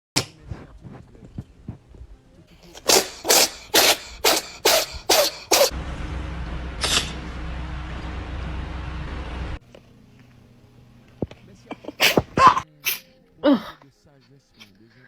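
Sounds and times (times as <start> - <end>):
steady low hum: 0.2 - 12.4
cat sneezing: 2.5 - 5.7, 11.9 - 13.8.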